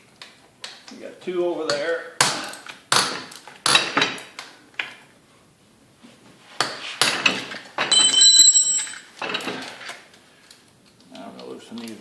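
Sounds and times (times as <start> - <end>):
ringing steel clink: 7.9 - 9.0.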